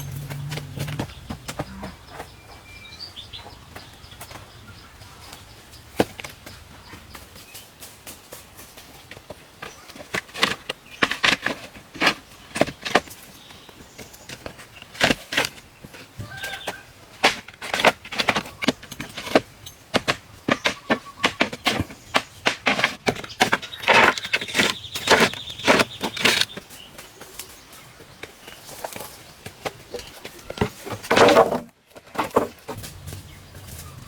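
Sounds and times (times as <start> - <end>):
tools knocking and scraping material: 9.7 - 26.6.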